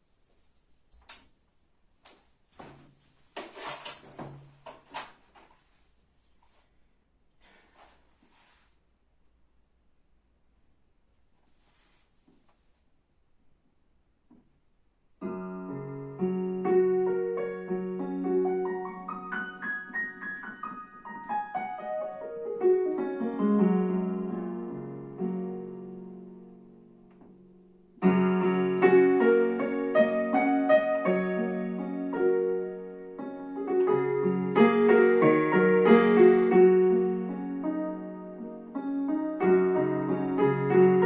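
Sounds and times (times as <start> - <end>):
piano melody over low chords: 15.2 - 41.0.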